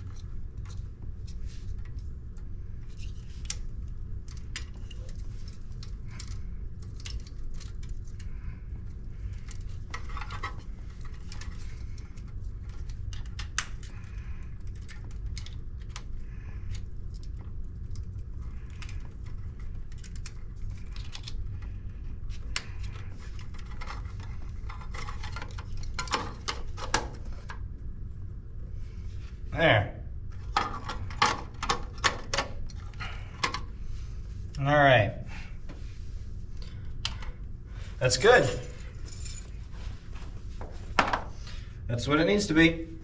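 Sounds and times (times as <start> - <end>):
steady low hum: 0.0 - 43.0
clatter of hard objects handled: 22.4 - 27.6.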